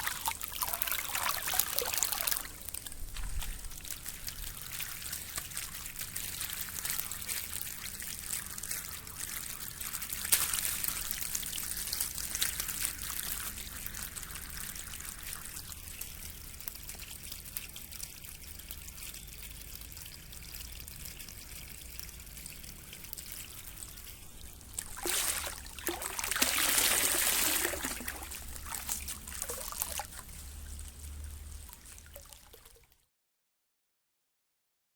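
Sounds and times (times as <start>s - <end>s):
water splashing: 0.0s - 15.7s, 20.8s - 33.0s
water trickling and rippling: 0.0s - 33.1s.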